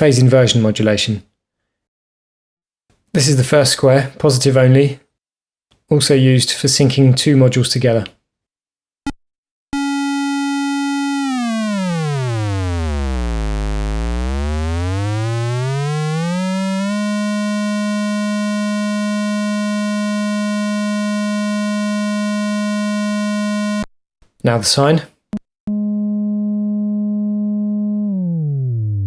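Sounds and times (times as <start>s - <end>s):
buzzy square-wave synth tone: 9.8s - 23.9s, 25.7s - 29.0s.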